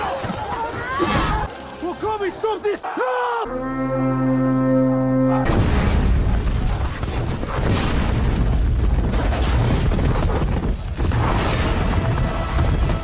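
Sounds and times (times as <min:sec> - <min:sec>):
dense rumbling with booms and crashes: 0:05.4 - 0:13.0.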